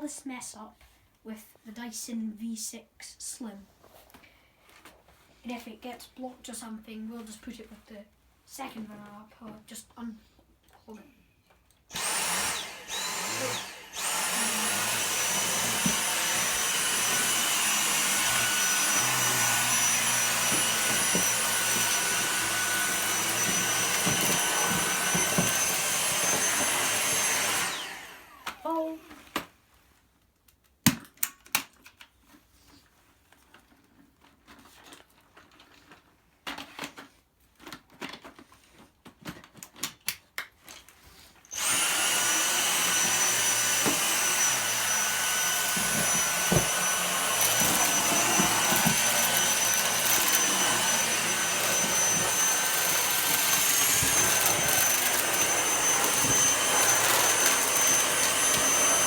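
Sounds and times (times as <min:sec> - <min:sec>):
cordless vacuum whining: 0:11.9 - 0:29.3, 0:41.5 - 0:59.0.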